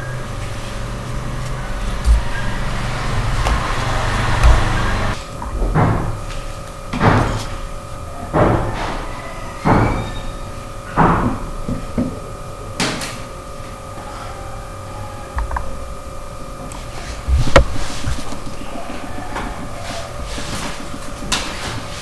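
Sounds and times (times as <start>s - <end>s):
paper rustling and creasing: 0.0s - 5.4s, 16.8s - 22.0s
faint steady hum: 9.0s - 22.0s.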